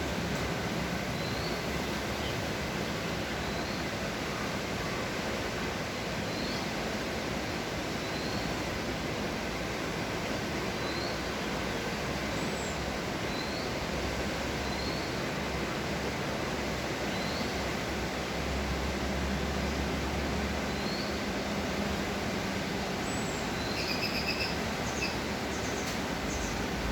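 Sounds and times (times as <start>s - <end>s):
small bird chirping: 23.1s - 26.6s.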